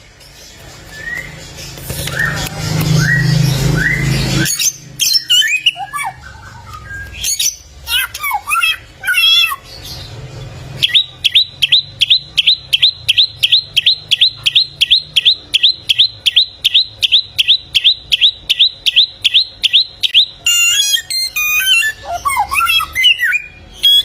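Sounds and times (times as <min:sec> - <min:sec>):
bird singing high notes: 0:10.8 - 0:24.0.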